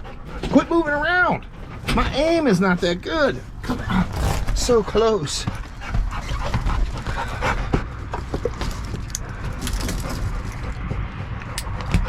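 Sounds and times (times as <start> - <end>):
dog panting: 0.0 - 12.0
knocks and handling noises: 4.0 - 10.9.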